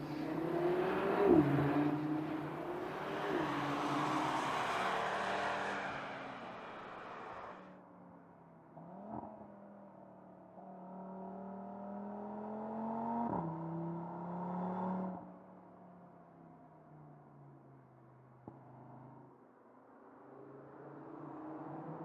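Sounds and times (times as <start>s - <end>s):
car engine accelerating: 0.0s - 7.7s.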